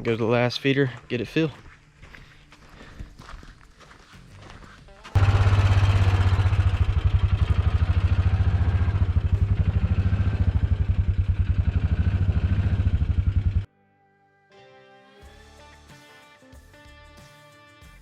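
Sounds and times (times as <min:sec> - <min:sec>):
engine pulsing steadily: 0:05.2 - 0:13.7
faint guitar music: 0:13.7 - 0:18.0.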